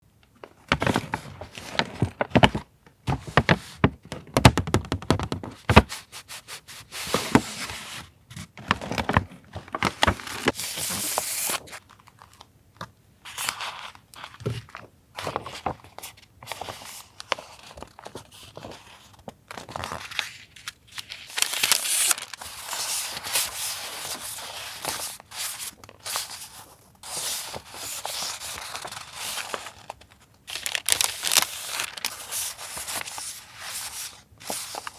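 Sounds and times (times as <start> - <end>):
packaging crinkling and tearing: 19.5 - 23.6, 27.6 - 33.4.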